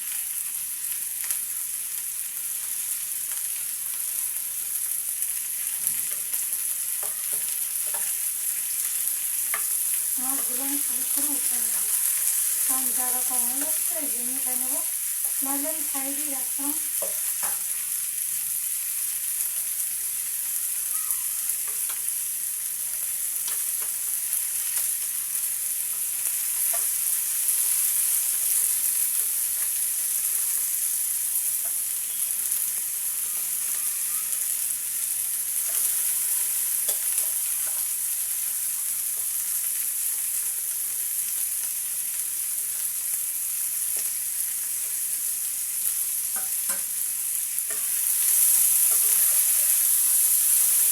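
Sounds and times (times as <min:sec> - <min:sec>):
fish sizzling in hot oil: 0:00.0 - 0:50.9
spatula clicking against pan: 0:36.8 - 0:37.9, 0:46.4 - 0:46.9.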